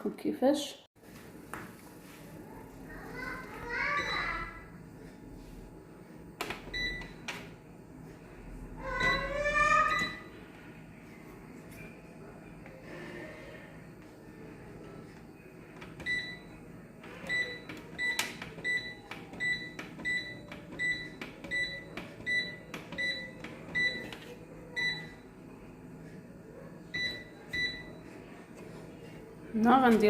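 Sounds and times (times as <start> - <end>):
washing machine button beeps: 6.6 - 7.4, 9.0 - 10.3, 16.0 - 16.5, 17.2 - 24.1, 24.8 - 25.2, 26.9 - 28.0.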